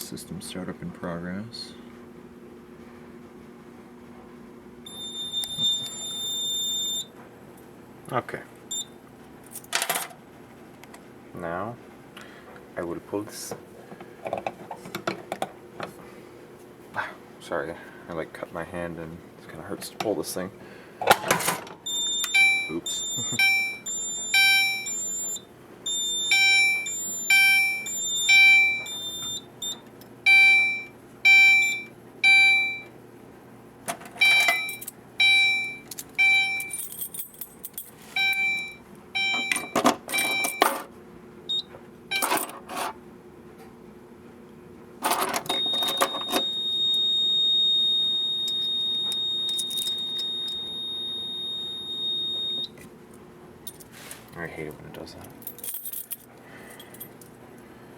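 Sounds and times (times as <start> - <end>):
fire alarm horn blasts: 4.8 - 7.2, 21.8 - 32.9, 34.2 - 36.8, 38.2 - 40.8, 45.5 - 52.8
steady high-pitched piezo tone: 21.9 - 32.9, 45.7 - 52.7.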